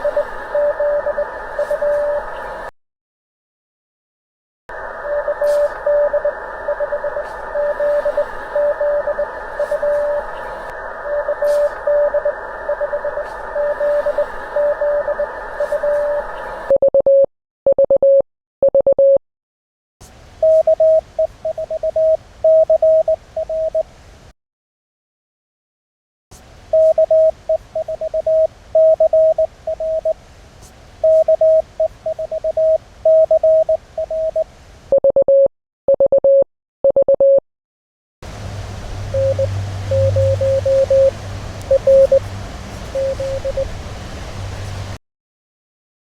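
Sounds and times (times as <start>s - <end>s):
morse code beeping: 0.0s - 2.2s, 5.1s - 10.2s, 11.1s - 19.2s, 31.1s - 37.4s, 39.1s - 41.1s, 41.7s - 42.2s, 43.0s - 43.7s
long radio tones: 0.0s - 2.7s, 4.7s - 16.7s, 38.3s - 43.8s
radio band hiss: 0.0s - 2.7s, 4.7s - 16.7s, 38.3s - 45.0s.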